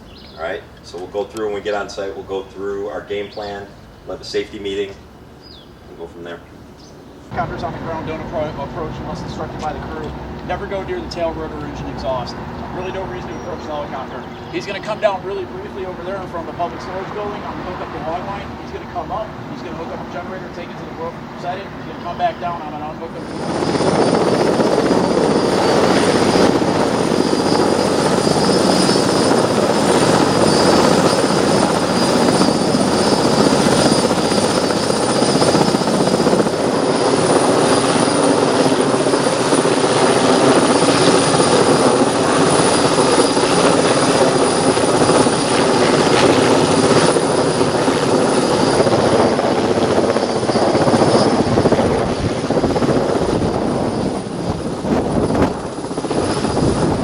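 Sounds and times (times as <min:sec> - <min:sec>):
helicopter engine high whine: 0:00.0 - 0:57.0
helicopter rotor noise: 0:00.0 - 0:57.0.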